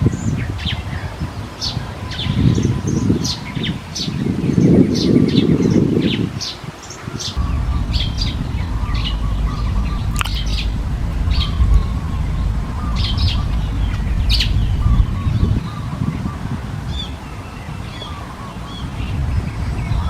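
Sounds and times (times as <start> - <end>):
birds chirping: 0.2 - 20.0
steady low rumble: 7.4 - 20.0.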